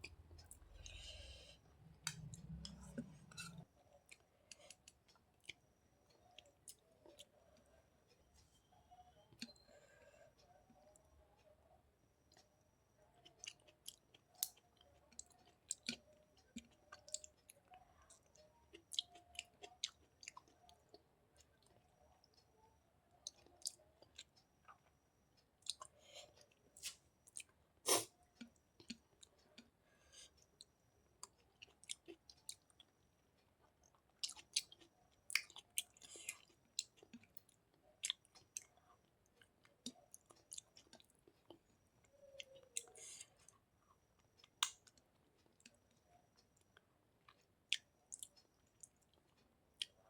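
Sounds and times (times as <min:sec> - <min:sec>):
mouth chewing food: 0:02.1 - 0:07.7, 0:13.2 - 0:21.9, 0:31.2 - 0:33.0, 0:33.6 - 0:46.0, 0:46.6 - 0:50.0.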